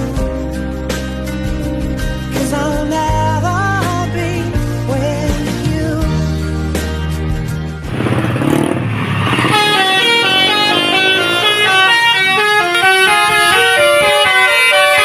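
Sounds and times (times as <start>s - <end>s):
rush of noise: 7.8s - 12.1s
air horn playing a tune: 9.3s - 15.0s.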